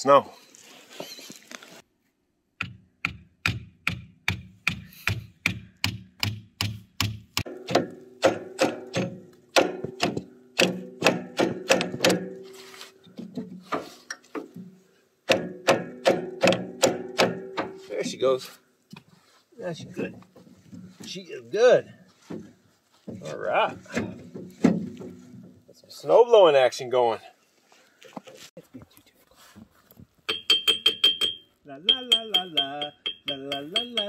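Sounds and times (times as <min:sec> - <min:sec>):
hammer blows on metal: 0:04.3 - 0:12.5, 0:30.3 - 0:34.0.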